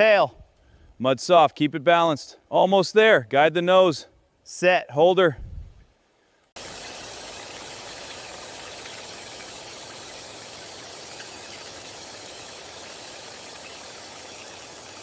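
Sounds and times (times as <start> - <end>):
steady rushing hiss: 5.9 - 15.0.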